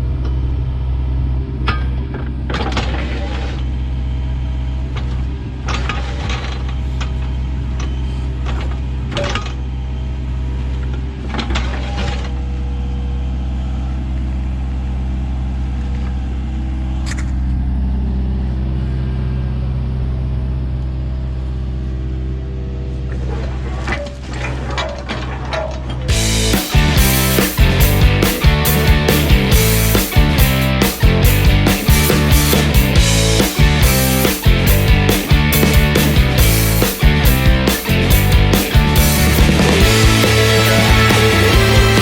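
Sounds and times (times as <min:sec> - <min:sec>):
diesel engine running: 0:00.0 - 0:42.0
knocks and clanks: 0:01.6 - 0:03.6, 0:05.0 - 0:09.6, 0:23.1 - 0:42.0.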